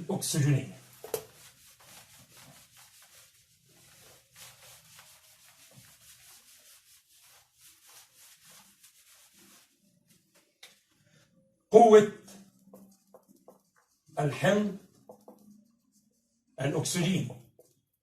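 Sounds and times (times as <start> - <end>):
writing scratching on a board: 12.4 - 16.2, 17.1 - 17.9.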